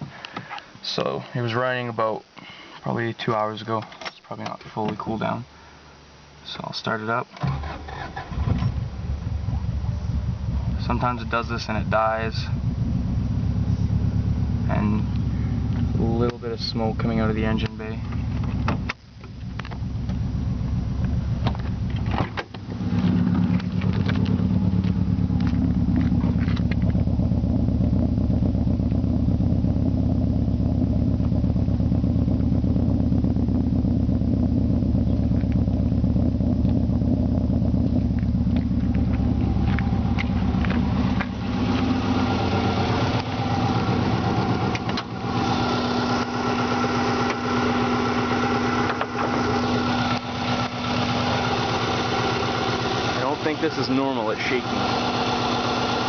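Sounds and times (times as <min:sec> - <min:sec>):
car engine idling unevenly: 0:00.0 - 0:01.5, 0:07.1 - 0:56.0
engine starting: 0:07.4 - 0:08.8.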